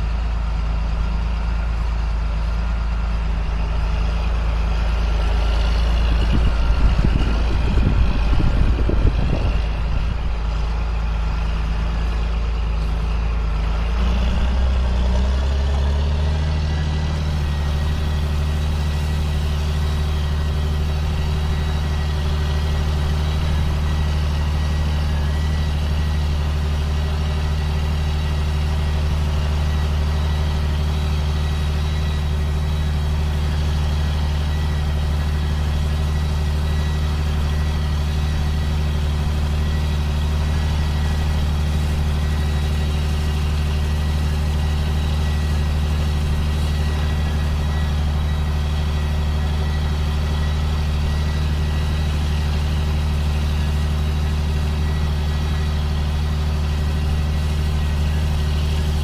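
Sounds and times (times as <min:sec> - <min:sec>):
diesel engine droning: 0:00.0 - 0:59.0
thin steady whine: 0:16.8 - 0:59.0.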